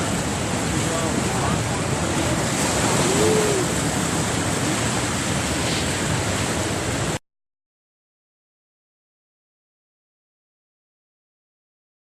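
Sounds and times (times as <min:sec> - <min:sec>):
waterfall roar: 0:00.0 - 0:07.2.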